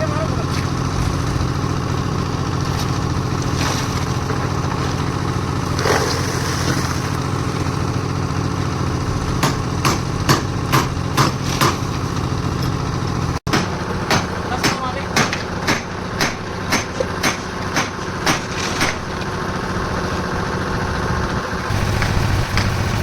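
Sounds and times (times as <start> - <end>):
concrete mixer engine running: 0.0 - 23.0
sharp knocks: 9.4 - 11.9, 13.5 - 19.1.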